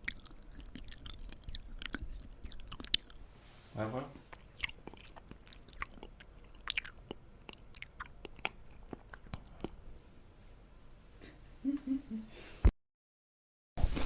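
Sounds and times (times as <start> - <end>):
person chewing food: 0.0 - 3.2, 4.2 - 9.8.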